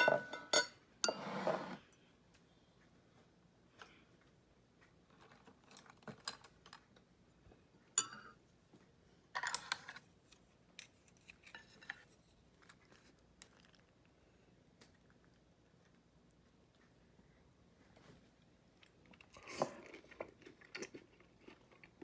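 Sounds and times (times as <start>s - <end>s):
dishes and utensils clinking: 0.0s - 1.8s, 8.0s - 8.4s
dishes clattering: 0.0s - 1.8s.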